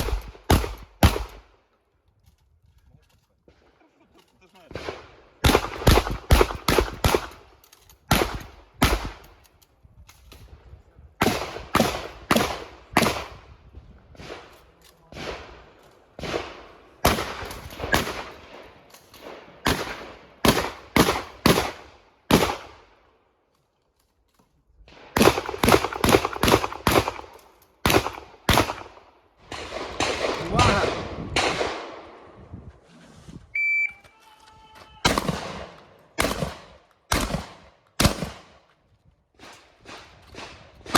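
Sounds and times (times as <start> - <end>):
shotgun shots echoing: 0.0 - 1.5, 4.7 - 7.5, 8.1 - 9.2, 11.2 - 13.4, 15.1 - 22.9, 24.9 - 32.3, 35.0 - 38.6.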